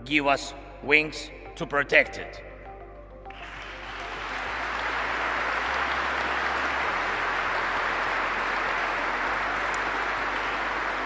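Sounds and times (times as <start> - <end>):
audience applauding: 3.3 - 11.0.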